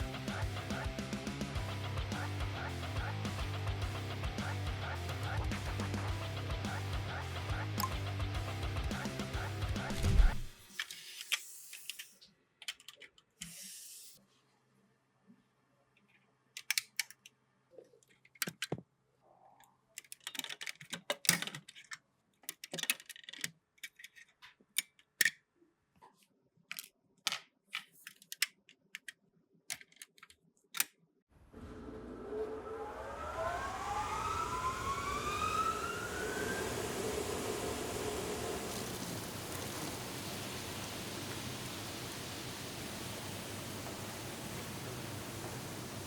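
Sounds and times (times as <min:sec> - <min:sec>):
clicks of small parts handled: 0:10.8 - 0:13.6, 0:16.0 - 0:17.4, 0:18.0 - 0:18.8, 0:19.6 - 0:25.4, 0:26.0 - 0:31.0.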